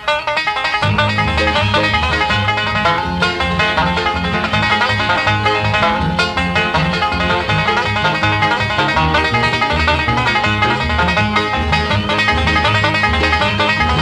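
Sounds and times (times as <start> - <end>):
plucked banjo: 0.0 - 14.0
bass beat: 0.8 - 14.0.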